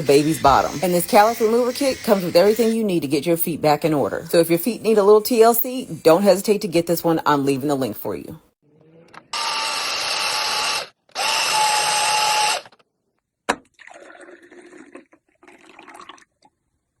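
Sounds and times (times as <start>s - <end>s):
small electric motor tool: 0.0s - 2.8s, 9.2s - 12.8s.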